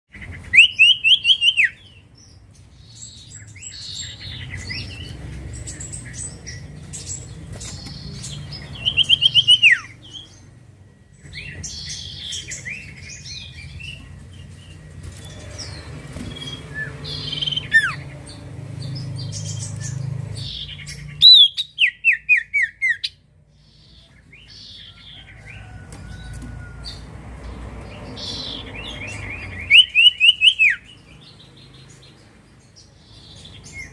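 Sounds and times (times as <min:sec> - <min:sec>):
bird chirps and twitters: 0:00.1 - 0:27.1, 0:27.8 - 0:33.9
bird singing whistled notes: 0:00.4 - 0:02.0, 0:07.8 - 0:10.5, 0:11.2 - 0:18.1, 0:19.2 - 0:23.2, 0:28.8 - 0:31.0.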